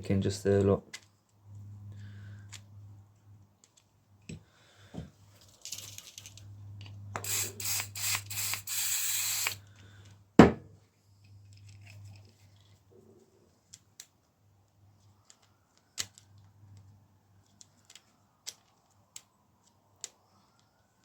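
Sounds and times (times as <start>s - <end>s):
aerosol spray hissing: 7.2s - 9.6s.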